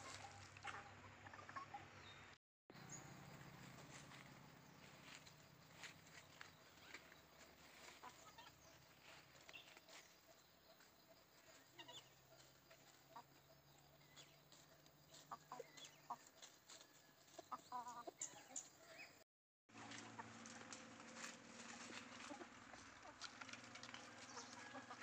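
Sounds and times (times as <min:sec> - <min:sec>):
chickens clucking faintly: 0:00.0 - 0:25.0.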